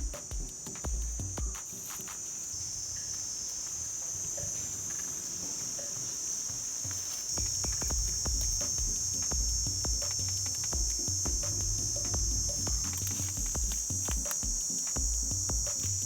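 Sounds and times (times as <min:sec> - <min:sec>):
insect chorus drone: 0:00.0 - 0:16.0
low thumps: 0:07.4 - 0:16.0.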